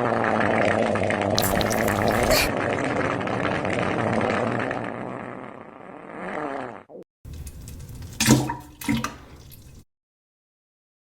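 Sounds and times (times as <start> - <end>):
fart sound effect: 1.1 - 2.6, 3.6 - 7.0.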